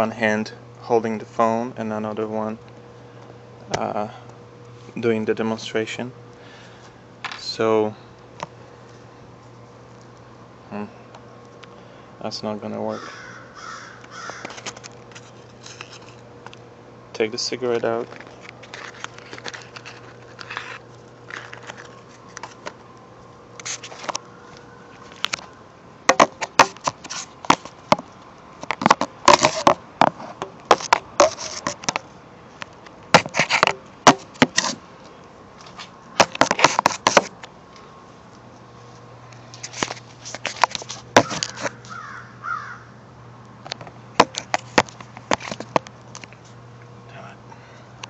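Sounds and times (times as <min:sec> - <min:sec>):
handling clicks and crackles: 0:17.7 - 0:38.4.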